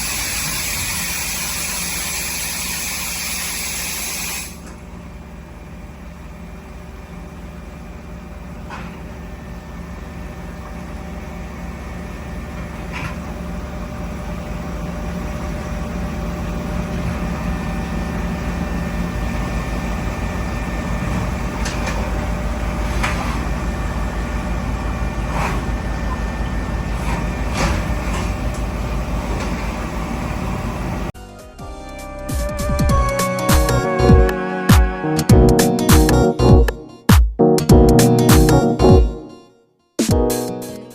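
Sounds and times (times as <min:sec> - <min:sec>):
machine low hum: 0:04.6 - 0:31.1
whining tones: 0:08.0 - 0:31.1.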